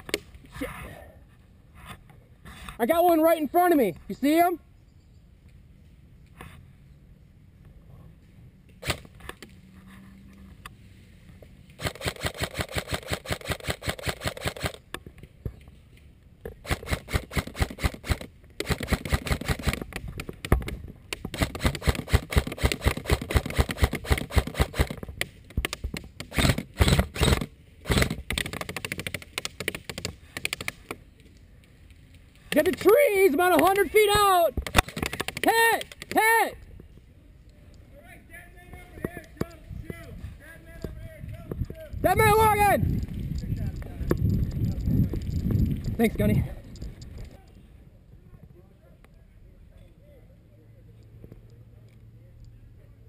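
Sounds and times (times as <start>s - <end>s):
airsoft gun rapid bursts: 11.8s - 14.8s, 16.6s - 19.8s, 21.4s - 25.0s, 26.2s - 30.7s.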